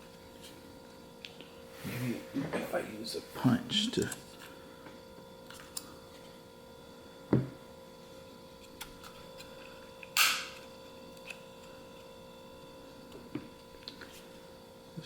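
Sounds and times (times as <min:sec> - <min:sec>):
faint steady hum: 0:00.0 - 0:15.0
dull knock: 0:07.3 - 0:07.6.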